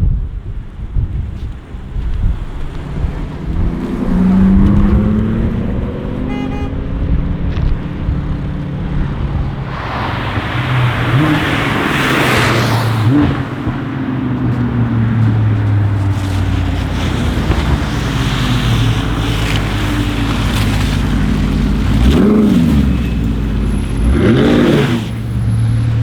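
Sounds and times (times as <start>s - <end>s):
car engine accelerating: 0.7s - 26.0s
broad rush of noise: 8.0s - 14.6s.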